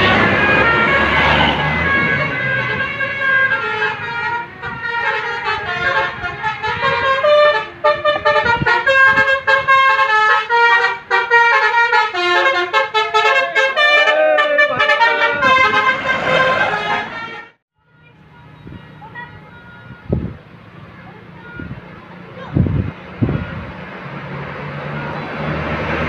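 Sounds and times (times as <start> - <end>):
multi-tone air horn melody: 0.0 - 18.2.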